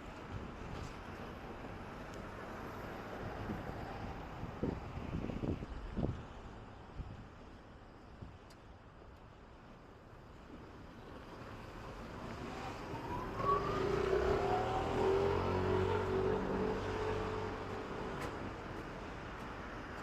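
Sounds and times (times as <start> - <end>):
vehicle engine driving past: 12.3 - 18.3.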